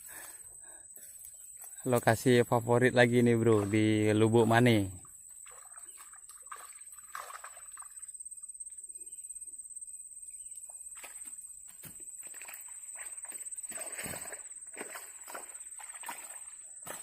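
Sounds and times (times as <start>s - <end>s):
water splashing and sloshing: 3.1s - 8.2s, 10.6s - 17.0s.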